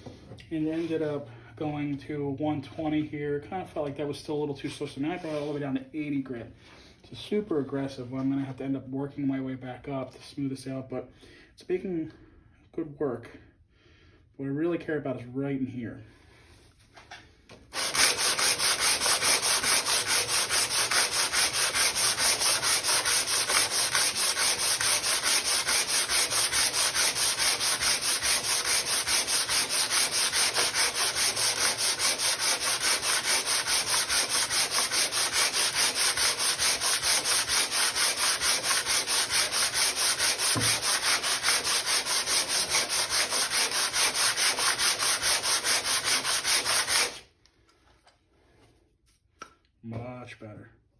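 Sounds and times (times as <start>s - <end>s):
metal scraping on sandpaper: 17.8s - 47.2s.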